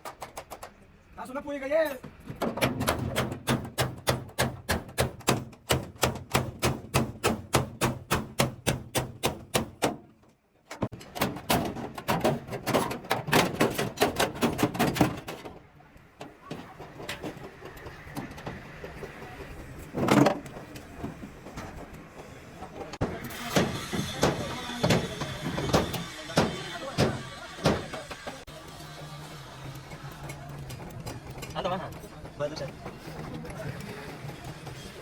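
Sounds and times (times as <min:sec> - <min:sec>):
hammer blows on sheet metal: 0:23.0 - 0:28.4.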